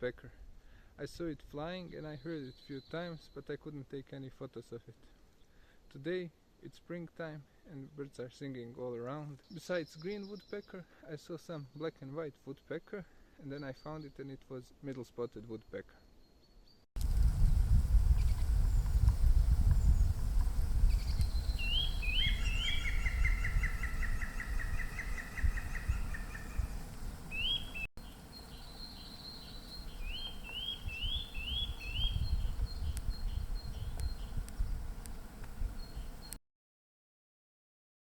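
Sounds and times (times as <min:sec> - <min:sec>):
songbirds singing: 0:09.1 - 0:10.8, 0:18.2 - 0:36.4
fast bird trill: 0:20.9 - 0:27.9.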